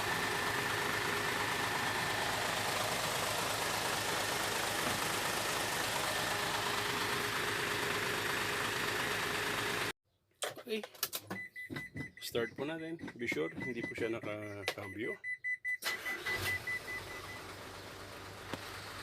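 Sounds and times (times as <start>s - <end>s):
truck engine idling: 0.0s - 9.9s, 16.3s - 19.0s.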